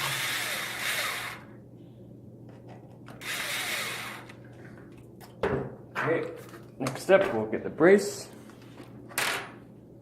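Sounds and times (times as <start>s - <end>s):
cordless screwdriver spinning: 0.0s - 1.5s, 3.2s - 4.4s.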